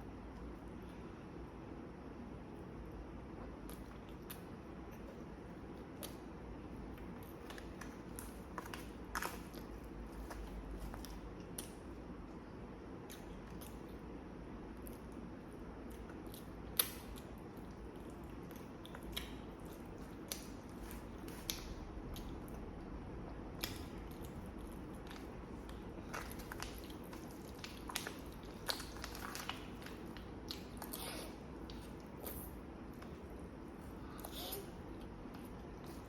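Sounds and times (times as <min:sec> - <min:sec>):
person chewing food: 0:03.3 - 0:12.4, 0:15.8 - 0:22.7, 0:23.5 - 0:34.3.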